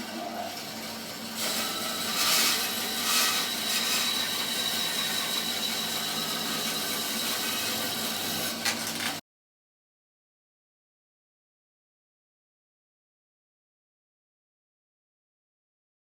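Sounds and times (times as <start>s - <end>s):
bandsaw cutting log: 0.0s - 9.2s.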